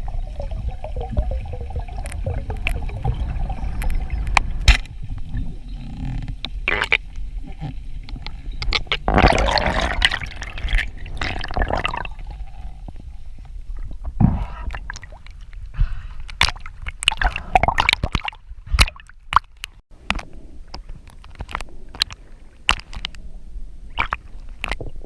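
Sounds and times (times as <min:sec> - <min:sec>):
steady low rumble: 0:00.0 - 0:17.7
water sloshing and gurgling: 0:00.0 - 0:25.0.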